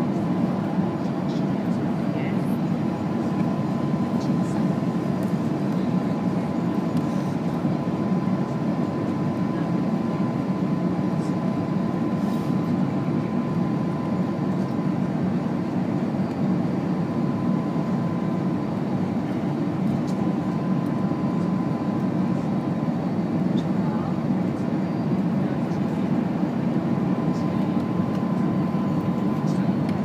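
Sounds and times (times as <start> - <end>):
low rumble of engines and airflow: 0.0 - 30.0.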